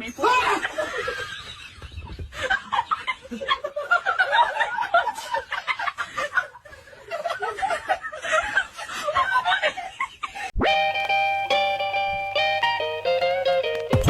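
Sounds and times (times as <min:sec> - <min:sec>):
plucked-string music: 0:10.6 - 0:14.0.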